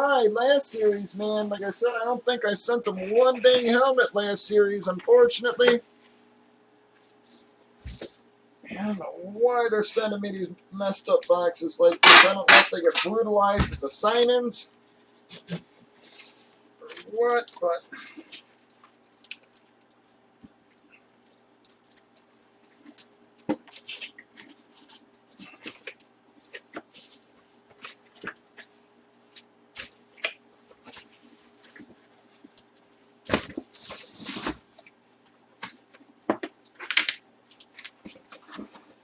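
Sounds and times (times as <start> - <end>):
faint steady hum: 0.0 - 39.0
packaging clicks and rustles: 20.9 - 28.7, 29.4 - 39.0.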